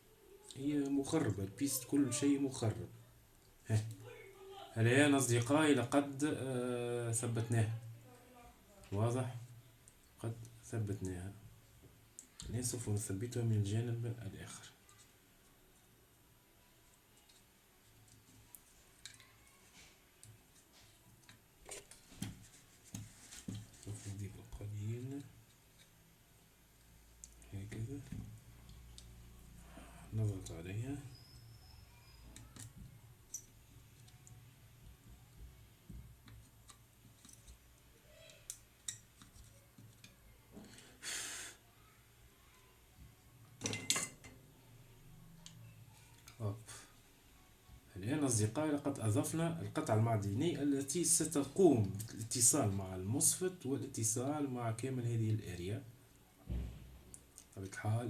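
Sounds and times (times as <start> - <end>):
light clicks and taps of tools: 16.9 - 26.0, 26.8 - 29.2, 32.2 - 40.8, 45.4 - 46.4.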